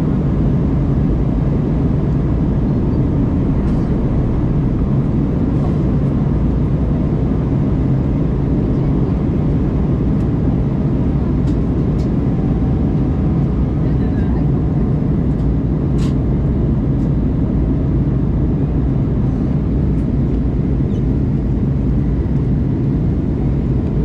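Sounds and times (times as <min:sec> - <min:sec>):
airliner cabin engine rumble: 0:00.0 - 0:24.0.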